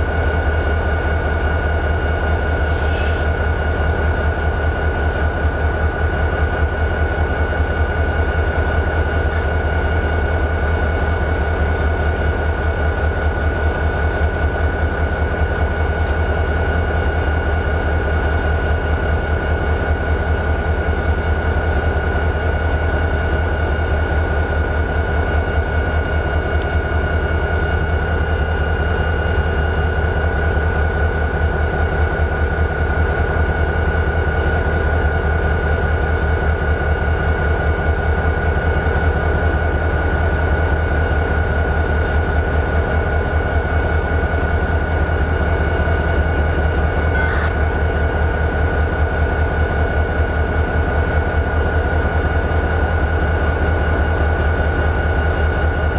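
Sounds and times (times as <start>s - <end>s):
diesel locomotive idling: 0.0s - 55.9s
high whine: 43.6s - 55.9s.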